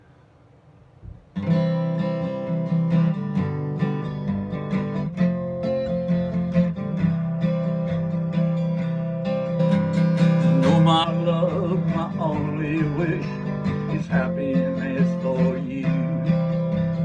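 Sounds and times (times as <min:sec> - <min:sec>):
faint hiss: 0:00.0 - 0:02.1
acoustic guitar strummed and picked: 0:01.3 - 0:17.0.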